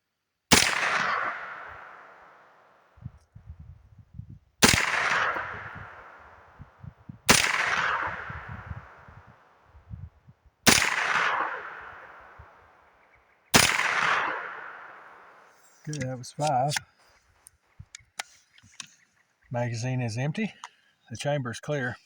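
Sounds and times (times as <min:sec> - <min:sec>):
rifle gunshots with echo: 0:00.5 - 0:03.2, 0:04.6 - 0:16.8.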